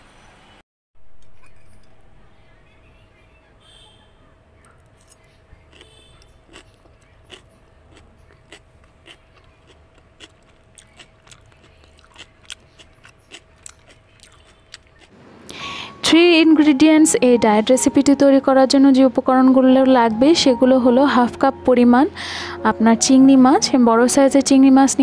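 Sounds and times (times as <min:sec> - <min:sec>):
faint steady hum: 0:01.0 - 0:25.0
person chewing crunchy food: 0:05.7 - 0:15.2.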